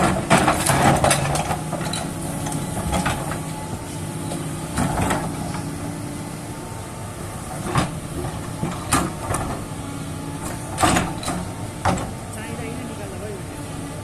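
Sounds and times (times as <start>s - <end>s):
metallic clanks and knocks: 0.0s - 3.4s, 10.7s - 12.2s
excavator diesel engine running: 0.0s - 14.0s.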